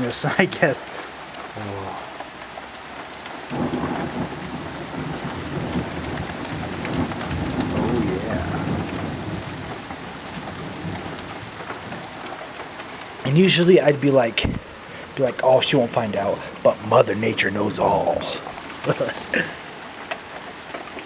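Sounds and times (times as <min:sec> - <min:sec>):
heavy rain pouring: 0:00.0 - 0:21.0
low rumble of thunder: 0:03.4 - 0:12.4.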